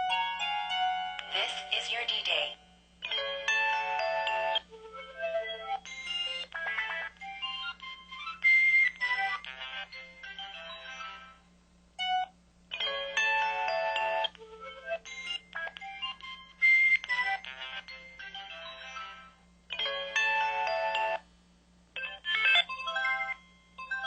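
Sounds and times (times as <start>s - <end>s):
electronic melody jingles: 17.9s - 21.2s.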